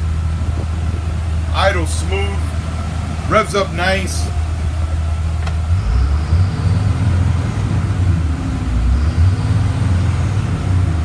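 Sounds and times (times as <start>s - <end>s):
bus engine running: 0.0s - 11.0s.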